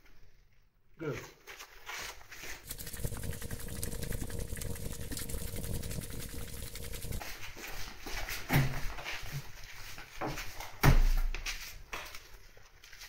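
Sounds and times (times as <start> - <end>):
small machine clattering: 2.6 - 7.3
motor hum: 2.6 - 7.9.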